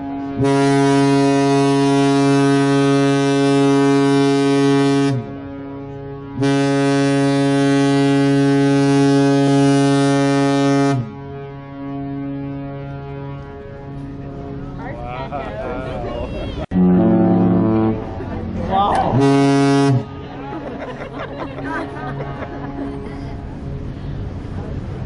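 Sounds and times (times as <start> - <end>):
ship air horn blasts: 0.0 - 15.2, 16.6 - 20.5.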